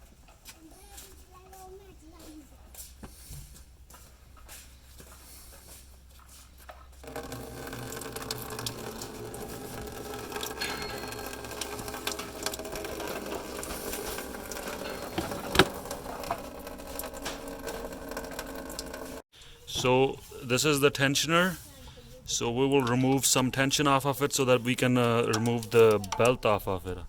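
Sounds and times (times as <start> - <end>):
coolant draining into a bucket: 7.0 - 19.2.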